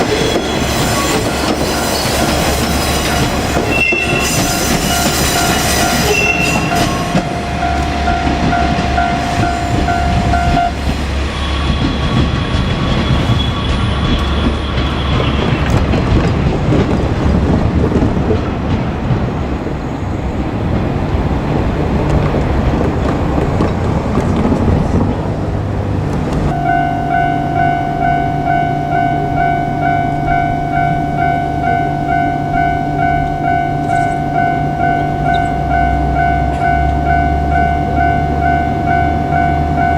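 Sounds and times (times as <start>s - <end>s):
level crossing warning bell: 0.0s - 10.9s, 26.5s - 39.9s
wheels clacking over rail joints: 0.0s - 26.7s
diesel train rumbling past: 0.0s - 39.9s.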